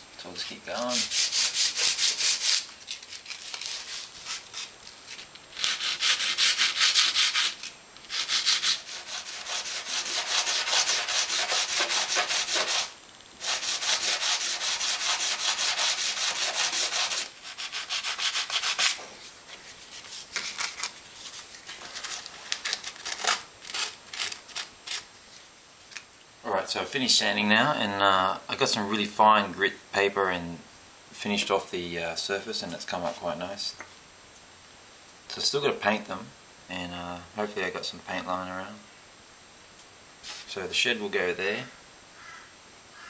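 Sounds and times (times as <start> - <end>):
sandpaper scratching on plaster: 0.7 - 4.7, 5.6 - 19.0.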